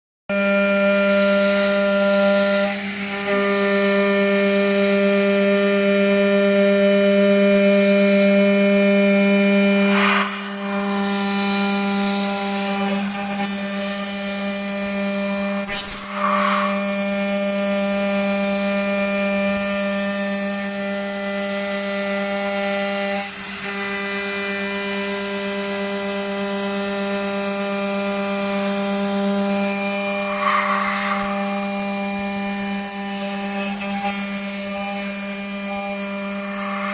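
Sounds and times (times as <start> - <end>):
milling machine spindle whine: 0.4 - 36.9
sharp rising squeal: 9.6 - 18.0, 29.1 - 36.9.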